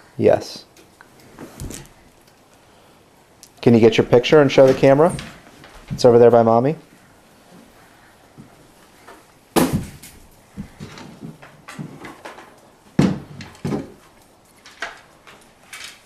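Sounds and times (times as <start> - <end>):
knocks and bumps indoors: 9.6 - 14.1.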